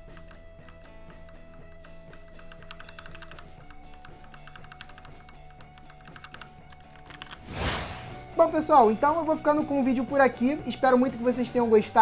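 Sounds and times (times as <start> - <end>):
mechanical keyboard typing: 0.0 - 7.4.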